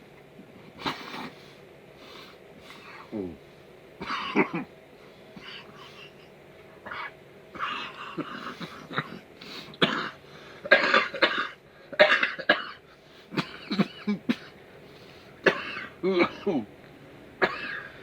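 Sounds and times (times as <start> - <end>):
man coughing: 4.0 - 4.7, 6.9 - 14.6, 15.4 - 16.7, 17.4 - 18.0.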